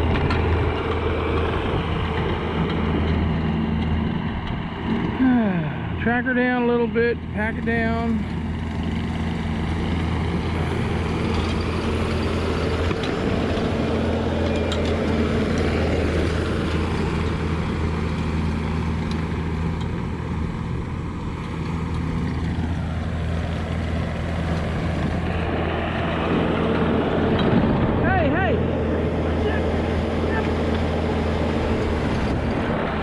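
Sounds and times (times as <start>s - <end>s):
diesel engine under load: 0.0s - 33.0s
light clicks from tracks: 14.4s - 17.4s, 19.0s - 20.0s.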